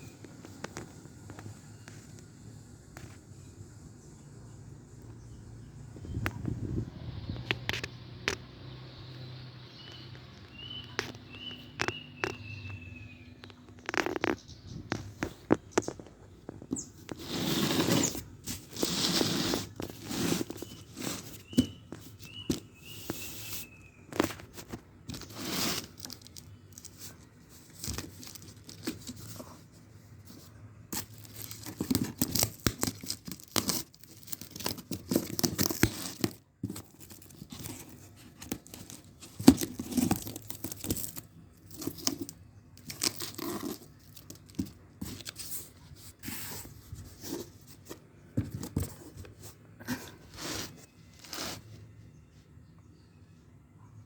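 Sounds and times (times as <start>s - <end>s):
packaging tearing and crinkling: 24.2s - 29.4s, 31.0s - 45.6s
handling clicks and knocks: 30.9s - 45.6s.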